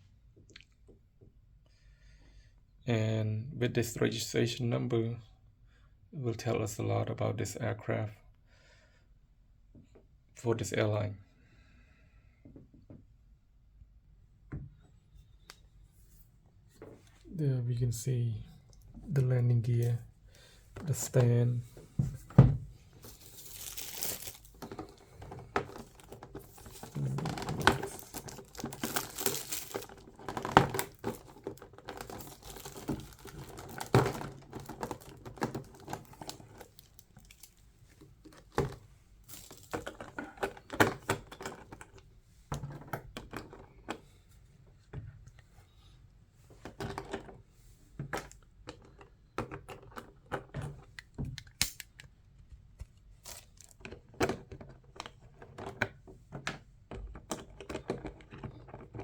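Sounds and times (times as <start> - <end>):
plastic wrapping crinkling and tearing: 23.0 - 37.6, 38.4 - 40.0, 53.2 - 53.8.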